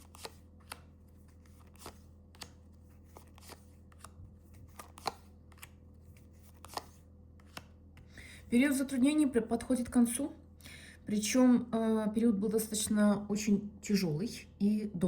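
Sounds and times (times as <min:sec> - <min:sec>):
cards clicking and snapping: 0:00.0 - 0:05.8, 0:06.4 - 0:08.1
low electrical hum: 0:00.0 - 0:15.0.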